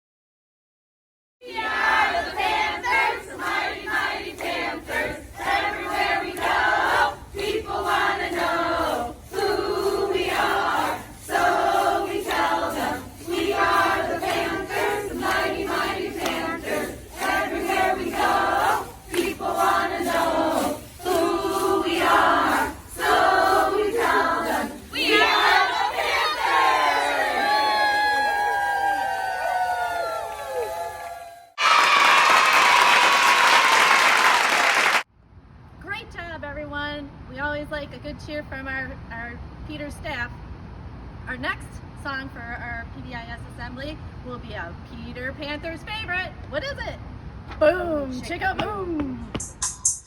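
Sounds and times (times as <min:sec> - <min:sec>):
group chanting a cheer: 0:01.4 - 0:35.0
cheering and whoops: 0:26.2 - 0:34.9.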